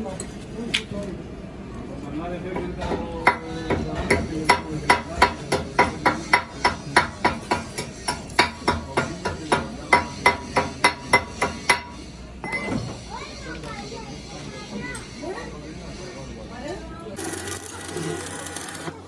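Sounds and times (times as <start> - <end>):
hammer striking metal: 4.1 - 12.0.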